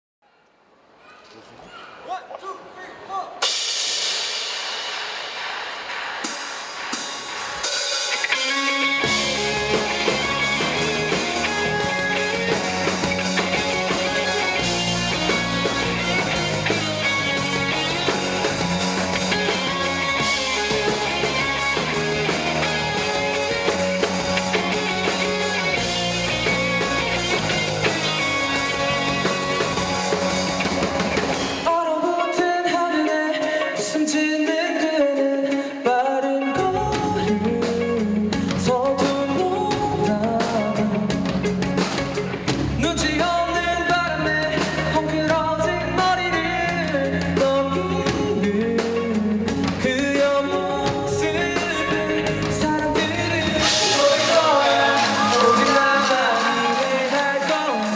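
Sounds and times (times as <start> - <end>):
drums: 0.8 - 57.9
electric guitar: 3.4 - 57.9
bass line: 8.3 - 31.7, 36.6 - 57.9.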